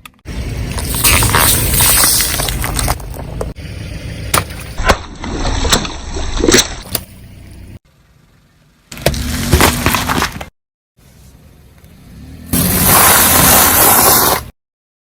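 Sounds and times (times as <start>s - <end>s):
plastic bottles cracking and popping: 0.7s - 3.5s
liquid splashing and gurgling: 4.9s - 6.8s.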